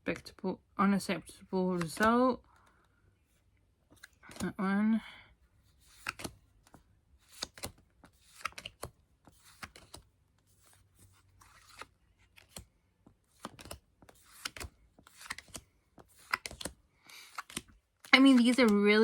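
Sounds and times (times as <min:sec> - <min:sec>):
cards rustling together: 0:01.4 - 0:04.5, 0:05.5 - 0:19.0
cards clicking: 0:01.8 - 0:02.7, 0:03.9 - 0:04.5, 0:05.9 - 0:10.8, 0:11.4 - 0:12.7, 0:13.3 - 0:18.8.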